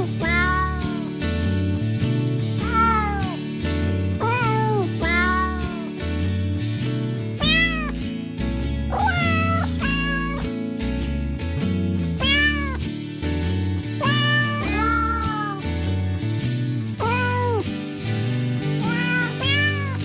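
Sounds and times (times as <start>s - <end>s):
cats meowing: 0.0s - 1.1s, 2.6s - 3.4s, 4.2s - 5.9s, 7.4s - 8.0s, 8.9s - 10.5s, 12.2s - 12.8s, 14.0s - 15.7s, 17.0s - 17.7s, 18.8s - 20.0s.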